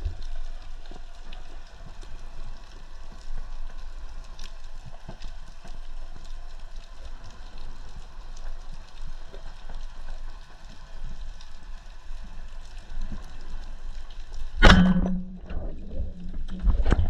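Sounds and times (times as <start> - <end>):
scattered clicks and crackles: 0.0 - 17.0
underwater rumble of moving water: 0.0 - 17.0.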